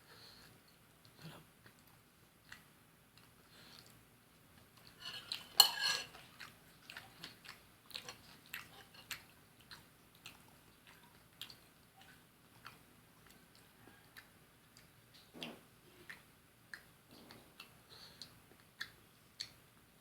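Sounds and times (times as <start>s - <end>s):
dishes clattering: 5.0s - 6.2s
dishes clinking: 5.0s - 6.2s.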